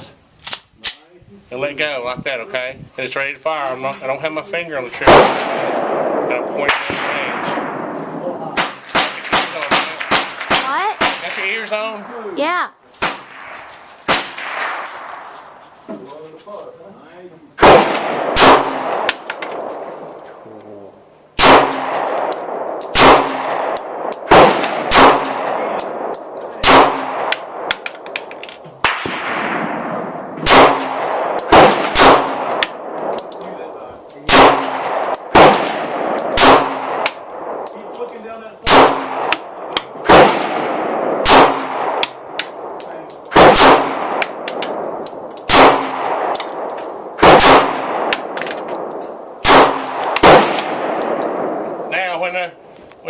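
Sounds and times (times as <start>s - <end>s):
pistol shots with echo: 5.0s - 11.9s, 13.0s - 15.2s, 17.6s - 20.2s, 21.4s - 51.9s.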